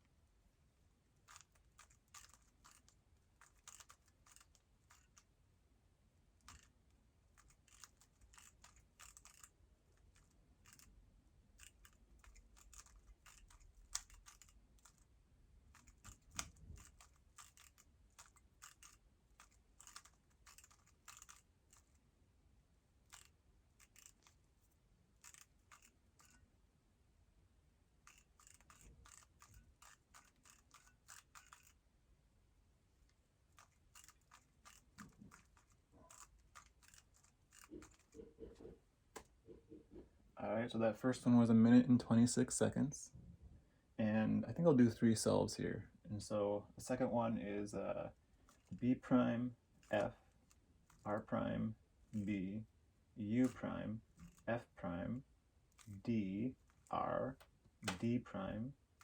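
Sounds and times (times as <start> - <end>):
speedcube layers clicking: 1.2 - 5.3, 6.4 - 11.0, 11.6 - 15.1, 15.7 - 22.0, 23.0 - 26.4, 28.0 - 31.8, 33.0 - 38.3, 48.5 - 48.8, 49.8 - 51.1, 53.4 - 54.5.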